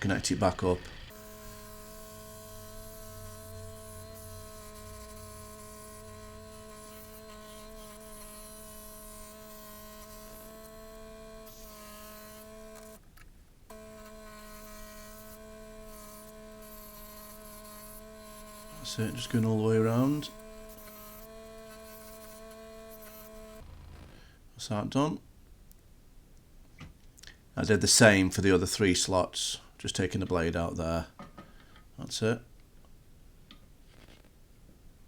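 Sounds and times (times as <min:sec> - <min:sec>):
scroll saw cutting wood: 0:00.4 - 0:13.0, 0:13.7 - 0:24.2.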